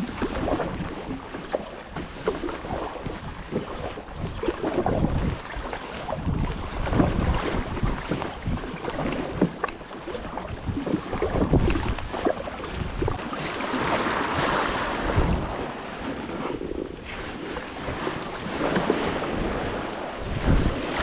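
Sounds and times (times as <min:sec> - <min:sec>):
water sloshing around kayak: 0:00.0 - 0:21.0
wind buffeting microphone: 0:00.0 - 0:21.0
knocks against hull: 0:11.1 - 0:15.7.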